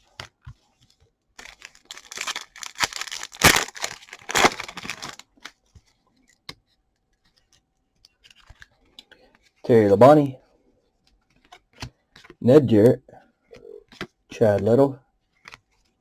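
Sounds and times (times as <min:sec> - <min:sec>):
cards clicking: 0:01.4 - 0:05.5
wrapper tearing and crinkling: 0:01.4 - 0:05.5.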